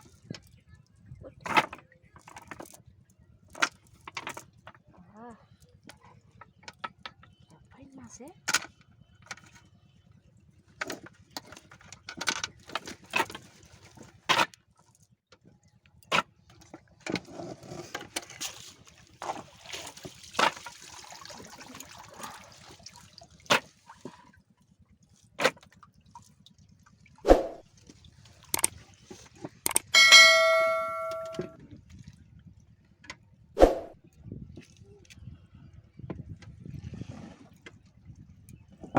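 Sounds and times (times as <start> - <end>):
water splashing: 27.3 - 27.6
knocks and clicks: 29.7 - 31.6
metal object struck and ringing: 29.7 - 31.6.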